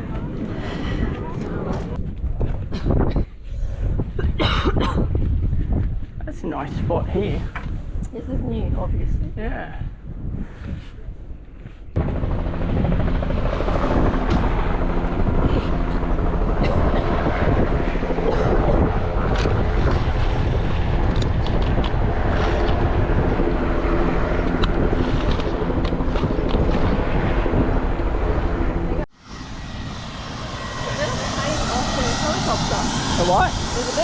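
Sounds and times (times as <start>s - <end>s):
loud steady engine drone: 12.0s - 34.0s.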